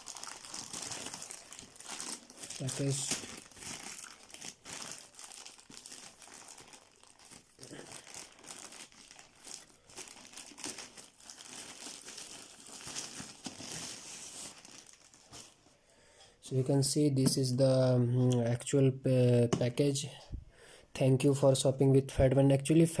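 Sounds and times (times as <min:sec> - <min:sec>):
wrapping crinkling: 0:00.0 - 0:15.7.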